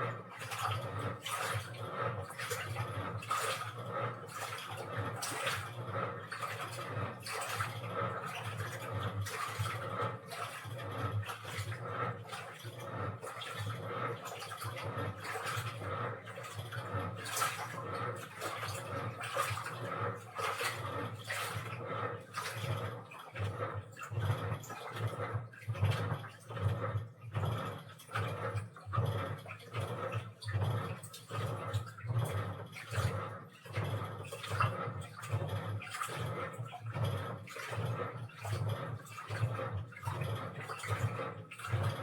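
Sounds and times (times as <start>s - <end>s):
washing machine humming: 0.0s - 42.0s
water sloshing in washing machine: 0.0s - 42.0s.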